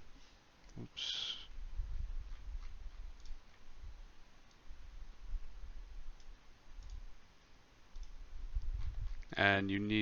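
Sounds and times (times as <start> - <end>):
computer mouse clicks: 2.3 - 3.7, 6.1 - 7.1, 7.9 - 9.3.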